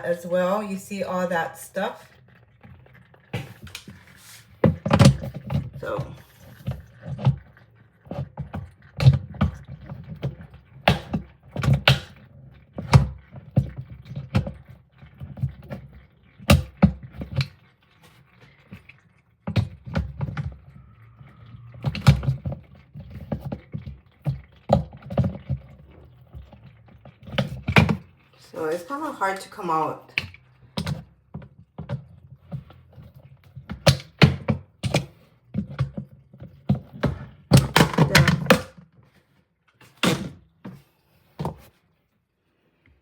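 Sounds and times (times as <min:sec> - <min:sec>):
plastic knocks clicks and thuds: 0:04.6 - 0:05.7, 0:33.6 - 0:38.9.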